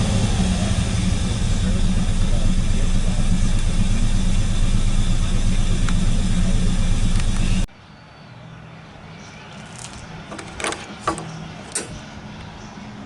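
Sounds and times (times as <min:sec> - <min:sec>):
engine running with low rumble: 0:00.0 - 0:07.7.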